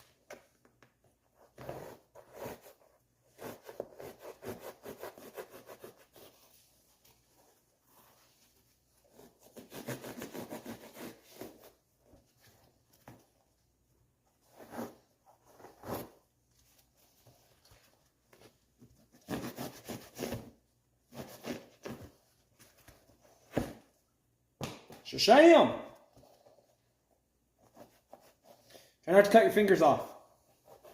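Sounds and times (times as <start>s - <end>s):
knife sawing through foam: 9.4s - 11.7s, 19.2s - 20.5s.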